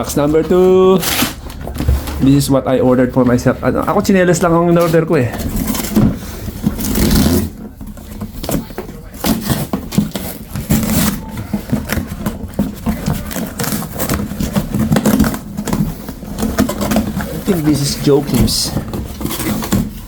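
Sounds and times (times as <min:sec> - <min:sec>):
cardboard packaging rustling: 0:00.0 - 0:20.0.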